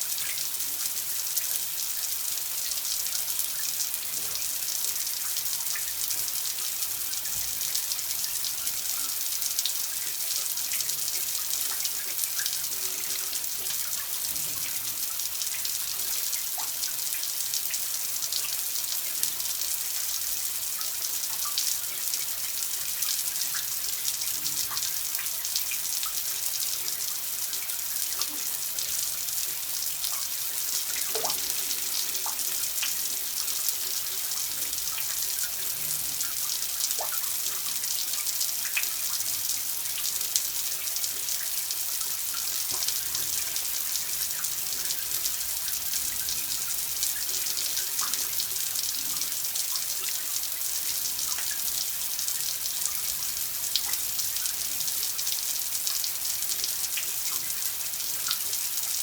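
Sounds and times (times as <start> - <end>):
running water hiss: 0.0 - 59.0.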